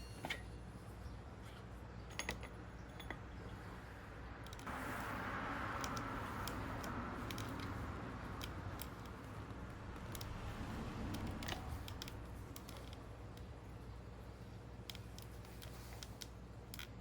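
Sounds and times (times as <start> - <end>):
small metal parts clicking: 4.4 - 4.7, 5.8 - 13.6, 14.8 - 17.0.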